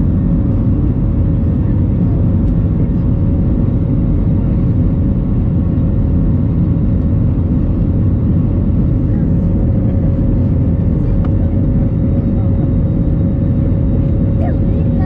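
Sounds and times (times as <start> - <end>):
loud low roar of engines and airflow: 0.0 - 15.0.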